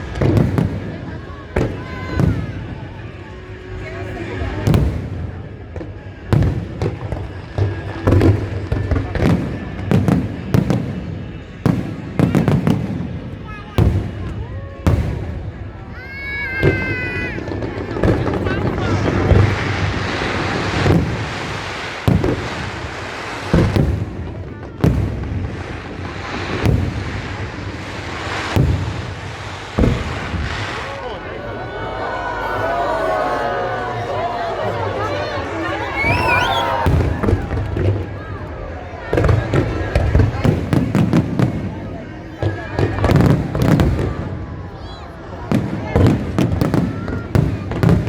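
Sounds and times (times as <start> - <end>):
fireworks booming: 0.0 - 2.8, 16.6 - 38.4, 39.1 - 44.3.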